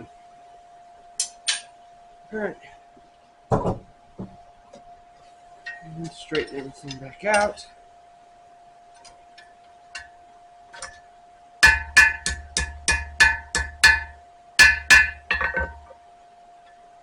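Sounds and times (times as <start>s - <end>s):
faint steady hum: 0.0s - 17.0s
hammer striking steel on anvil: 7.3s - 7.6s, 11.6s - 15.9s.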